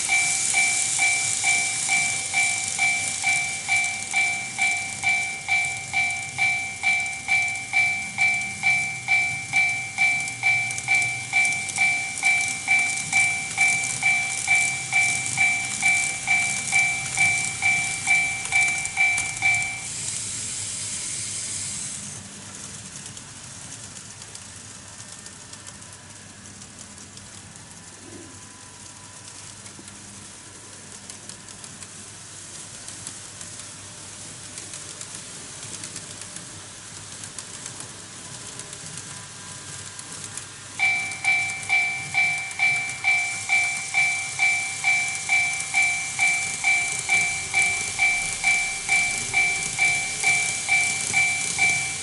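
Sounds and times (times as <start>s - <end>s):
crossing bell two-tone ding: 0.0s - 19.9s, 40.8s - 52.0s
steady hiss: 0.0s - 22.4s, 29.2s - 52.0s.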